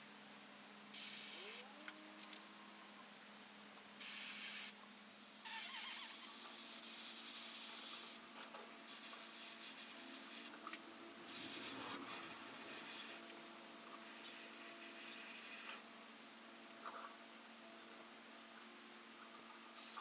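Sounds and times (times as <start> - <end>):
airbrush spraying bursts: 1.0 - 1.6, 4.0 - 8.2, 8.9 - 10.5, 11.3 - 13.2, 19.8 - 20.0.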